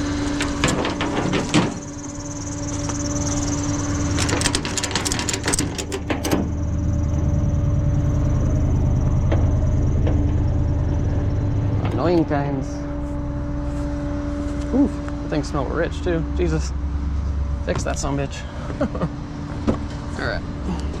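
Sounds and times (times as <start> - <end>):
sharp clicks and rattles: 0.0 - 6.6
pickup engine running: 0.0 - 21.0
squealing drive belt whine: 0.0 - 21.0.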